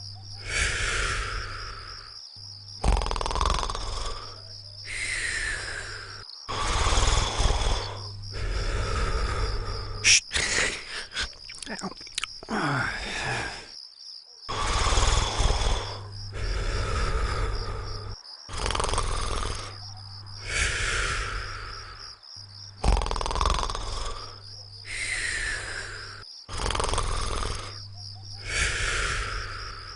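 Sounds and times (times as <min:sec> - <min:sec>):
cartoon snoring: 0:00.0 - 0:11.3, 0:14.5 - 0:22.2, 0:22.8 - 0:29.9
snorts and clicks: 0:10.0 - 0:12.5, 0:17.9 - 0:21.3, 0:22.8 - 0:27.8.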